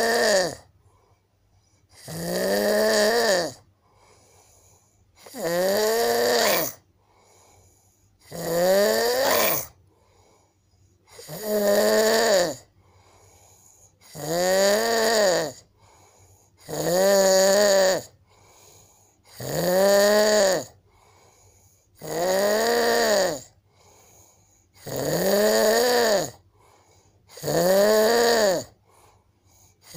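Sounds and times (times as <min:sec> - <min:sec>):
man snoring loudly: 0:00.0 - 0:00.7, 0:02.0 - 0:03.6, 0:05.2 - 0:06.8, 0:08.2 - 0:09.7, 0:11.1 - 0:12.7, 0:14.0 - 0:15.7, 0:16.6 - 0:18.1, 0:19.3 - 0:20.8, 0:22.0 - 0:23.6, 0:24.8 - 0:26.4, 0:27.3 - 0:28.8
quiet breaths: 0:00.6 - 0:02.2, 0:03.6 - 0:05.4, 0:06.7 - 0:08.3, 0:09.6 - 0:11.4, 0:12.5 - 0:14.2, 0:15.5 - 0:16.7, 0:18.1 - 0:19.4, 0:20.7 - 0:22.0, 0:23.4 - 0:24.9, 0:26.3 - 0:27.4, 0:28.6 - 0:29.9.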